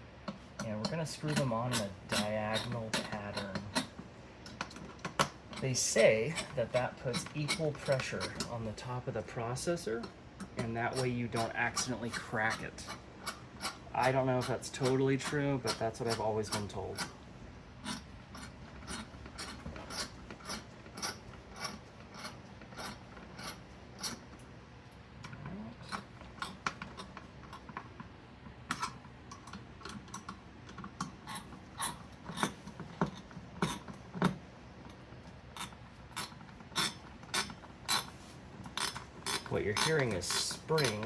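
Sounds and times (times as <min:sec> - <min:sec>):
screw springs clicking: 0:35.6 - 0:41.0.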